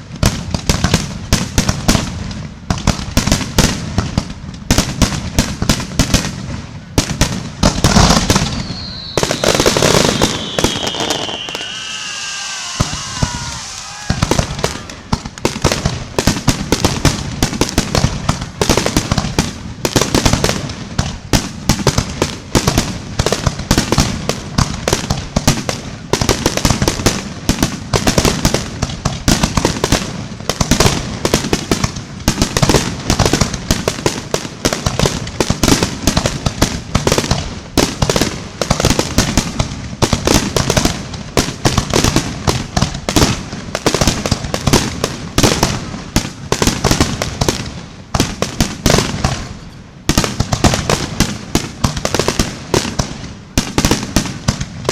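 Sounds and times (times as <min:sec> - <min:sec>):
fireworks shells bursting: 0:07.6 - 0:15.6.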